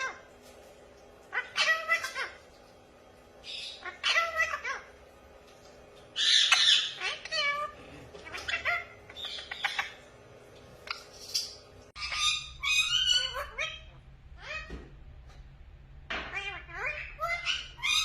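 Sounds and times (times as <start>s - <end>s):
parrot squawk: 0.0s - 0.3s, 1.3s - 2.4s, 3.4s - 5.0s, 6.2s - 10.0s, 12.0s - 14.8s, 16.2s - 18.0s
parrot chirps and whistles: 10.8s - 14.7s, 16.4s - 18.0s.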